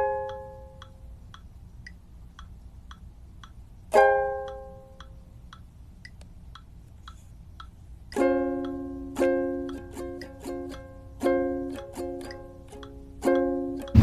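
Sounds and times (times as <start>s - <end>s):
light ticking beat: 0.0s - 14.0s
plucked string chord: 8.2s - 14.0s.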